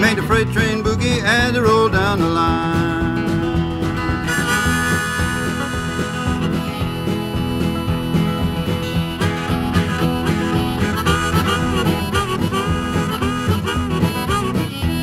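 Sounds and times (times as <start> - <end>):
steady guitar rhythm: 0.0 - 15.0
harmonica solo with bending notes: 3.3 - 15.0.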